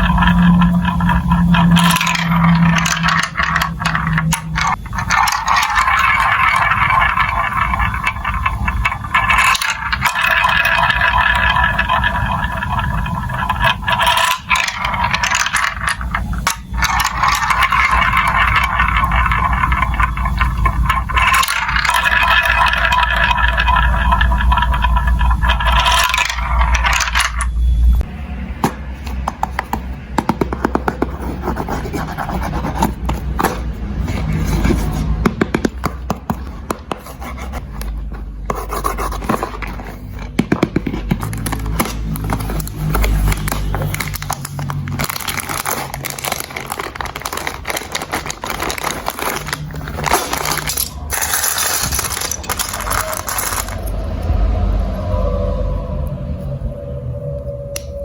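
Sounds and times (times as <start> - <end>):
marbles rattling down plastic tracks: 0.0 - 27.6, 39.1 - 54.4.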